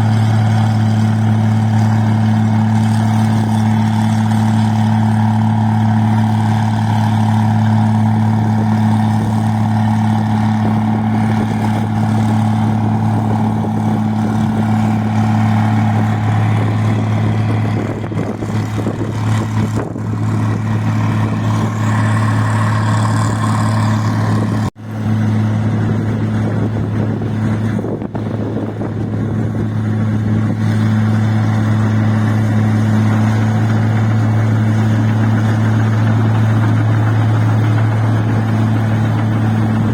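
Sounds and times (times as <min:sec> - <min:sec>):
rice machine engine humming: 0:00.0 - 0:39.9.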